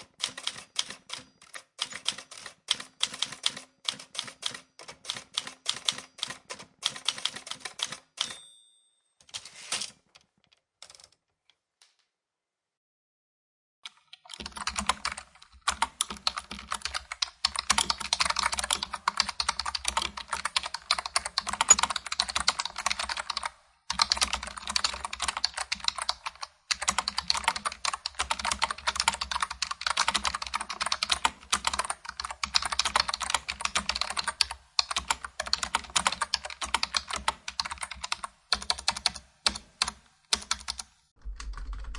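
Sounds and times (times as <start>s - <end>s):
typewriter keys clacking: 0.0s - 8.4s, 13.9s - 39.2s
typing on computer keyboard: 0.0s - 8.4s, 10.5s - 11.2s, 13.8s - 41.9s
typewriter bell ding: 8.2s - 9.3s.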